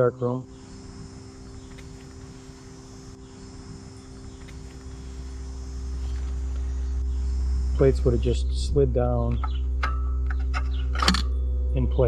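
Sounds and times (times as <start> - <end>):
low background hum: 0.0 - 12.0
deep rumble: 1.0 - 12.0
faint clicks: 1.4 - 3.2, 4.0 - 7.1.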